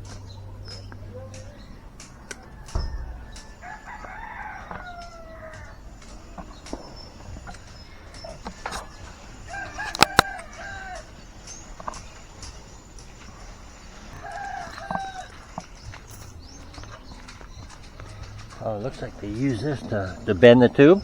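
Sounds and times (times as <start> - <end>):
sharp clicks: 0.0 - 19.4
rooster crowing: 1.0 - 21.0.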